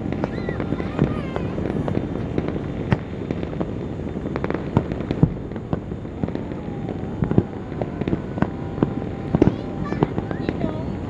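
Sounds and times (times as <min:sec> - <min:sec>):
firecrackers banging and popping: 0:00.0 - 0:11.0
rumble of distant blasts: 0:00.0 - 0:11.0
faint falling whistle: 0:06.0 - 0:11.0.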